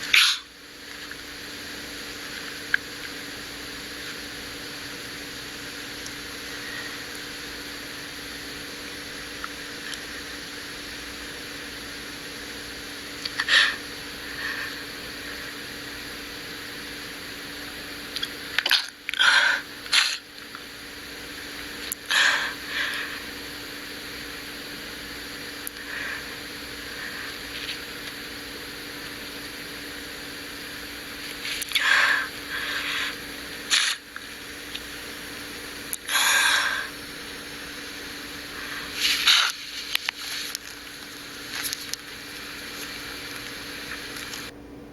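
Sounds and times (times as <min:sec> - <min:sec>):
steady low hum: 0:00.0 - 0:44.9
person sneezing: 0:00.1 - 0:00.5.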